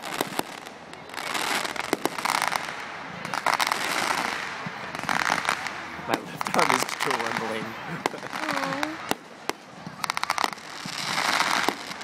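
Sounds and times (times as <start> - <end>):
firework bangs: 0.0 - 12.0
rapid crackling firework pops: 0.0 - 12.0.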